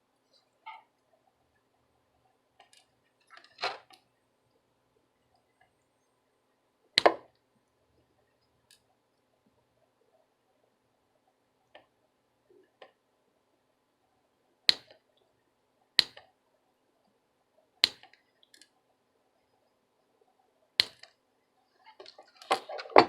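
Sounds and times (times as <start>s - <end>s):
wire snipping: 14.7s - 15.0s, 16.0s - 16.3s, 17.8s - 18.7s, 20.8s - 21.2s.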